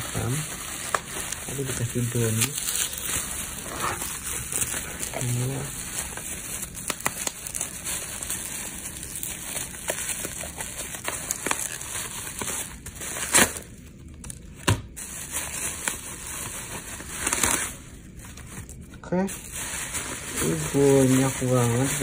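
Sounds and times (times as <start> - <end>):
packaging rustling and crinkling: 0.0 - 22.0.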